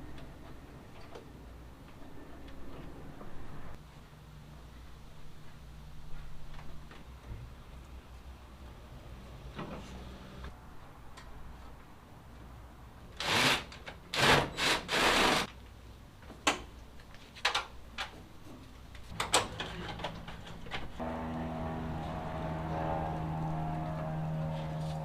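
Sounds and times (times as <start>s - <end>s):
engine-like hum: 7.9s - 10.6s, 19.1s - 25.0s.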